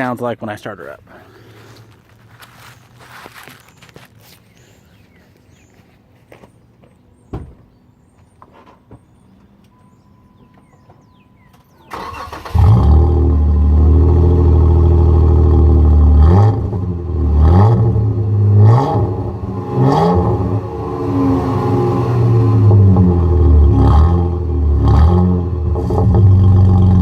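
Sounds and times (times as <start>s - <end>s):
starter cranking engine: 11.9s - 12.9s
car engine idling and revving: 12.3s - 27.0s.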